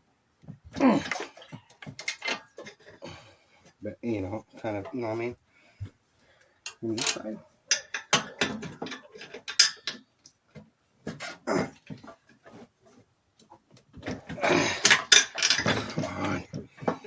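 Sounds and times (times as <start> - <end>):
metal clicks and knocks: 1.0 - 3.0, 6.6 - 12.2, 13.4 - 17.0.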